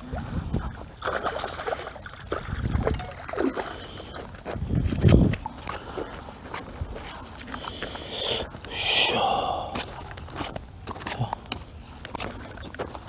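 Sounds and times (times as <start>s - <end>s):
fish splashing at water surface: 0.1s - 4.4s.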